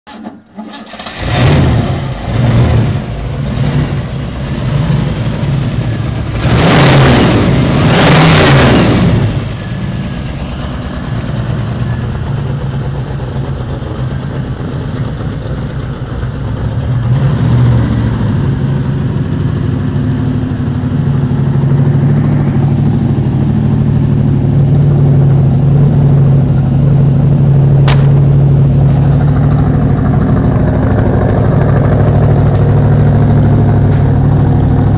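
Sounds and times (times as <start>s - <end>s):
car engine revving and idling: 0.9s - 34.9s
sharp click: 27.8s - 28.2s.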